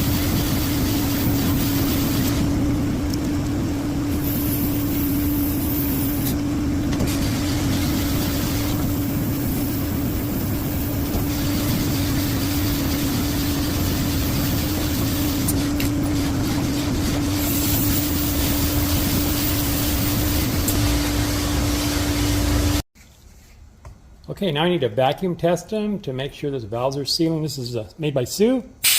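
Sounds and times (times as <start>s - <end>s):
broad rushing noise: 0.0s - 22.8s
machine motor humming: 0.0s - 22.8s.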